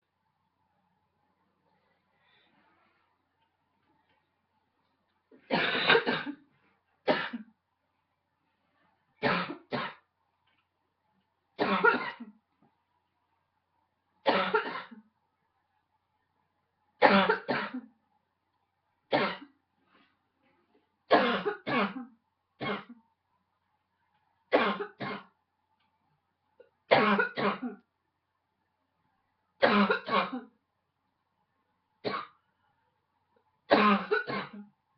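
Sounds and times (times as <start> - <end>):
woman coughing: 5.5 - 6.4, 11.6 - 12.3, 21.1 - 22.9, 26.9 - 27.8, 29.6 - 30.5, 33.7 - 34.7.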